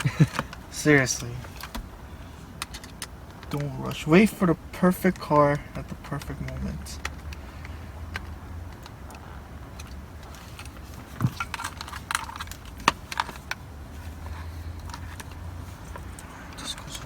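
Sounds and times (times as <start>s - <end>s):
small parts clicking and tapping: 6.2s - 13.6s.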